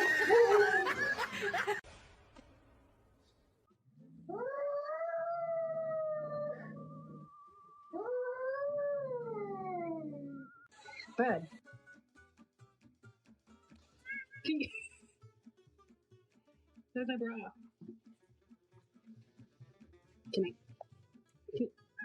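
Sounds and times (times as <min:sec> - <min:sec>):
dog howling: 0:04.2 - 0:10.5.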